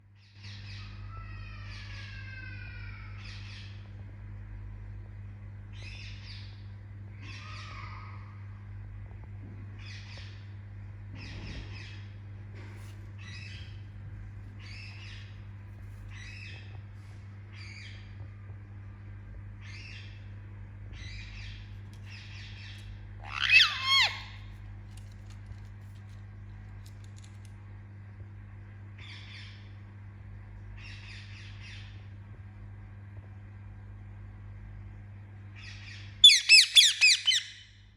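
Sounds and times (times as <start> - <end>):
steady low hum: 0.0 - 37.9
parakeet chirping: 21.0 - 24.4, 35.6 - 37.7
parakeet squawk falling in pitch: 23.2 - 24.4.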